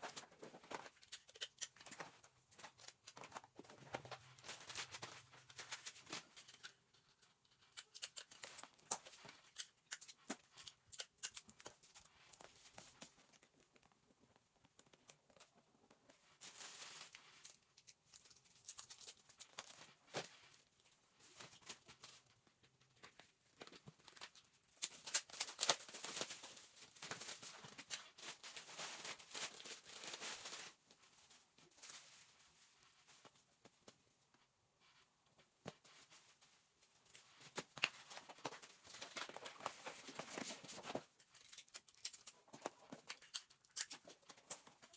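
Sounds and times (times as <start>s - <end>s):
packaging and clothes rustling: 0.0s - 6.8s, 23.0s - 34.0s, 35.7s - 44.9s
small clicks and snips: 0.1s - 3.5s, 5.7s - 16.2s, 41.2s - 44.9s.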